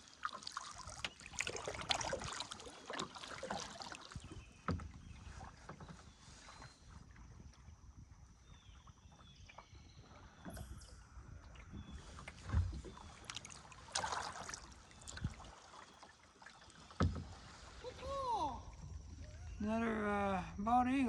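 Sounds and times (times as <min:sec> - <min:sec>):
paddle splashing in water: 0:00.0 - 0:19.6
dull thumps: 0:16.9 - 0:17.4.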